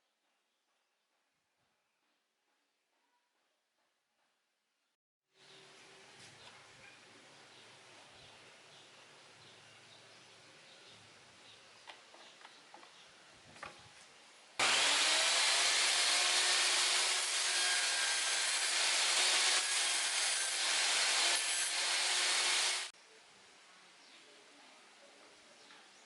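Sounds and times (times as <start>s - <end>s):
table saw cutting wood: 14.6s - 22.9s.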